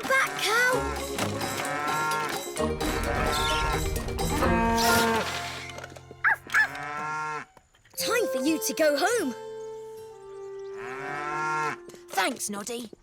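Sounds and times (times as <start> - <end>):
light background music: 0.3 - 6.5, 8.0 - 12.9
cartoon cow mooing: 4.3 - 5.4, 10.8 - 11.9.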